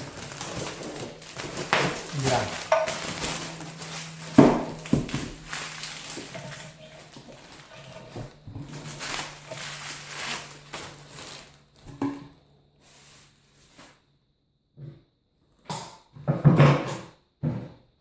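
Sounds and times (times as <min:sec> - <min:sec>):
steady low hum: 0:00.0 - 0:11.8
clunks and rustling of parts: 0:00.0 - 0:12.3.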